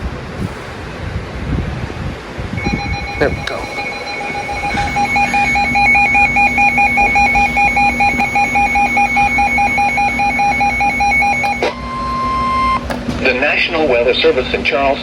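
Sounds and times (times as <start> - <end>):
steady warning tone: 2.5 - 15.0
rapid electronic alarm beeping: 2.6 - 14.3.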